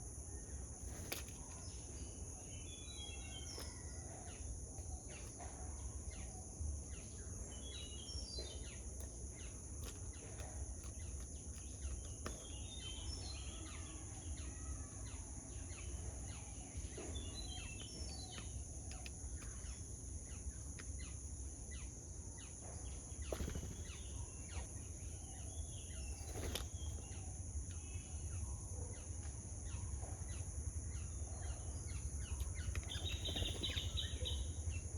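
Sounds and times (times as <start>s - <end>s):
birds chirping: 0.0s - 34.9s.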